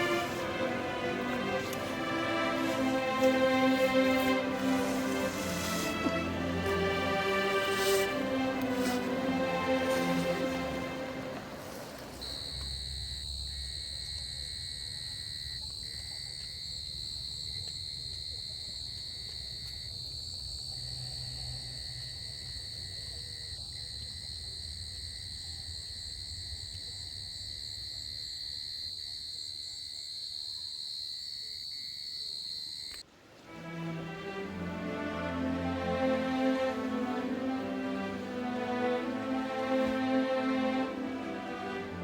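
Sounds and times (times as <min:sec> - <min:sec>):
insects droning: 0:00.0 - 0:33.0.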